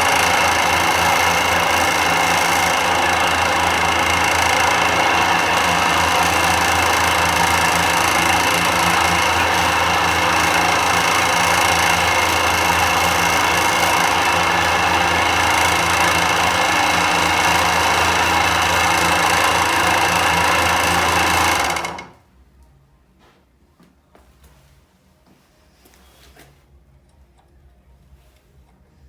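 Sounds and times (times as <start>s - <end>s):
electric motor humming: 0.0s - 22.2s.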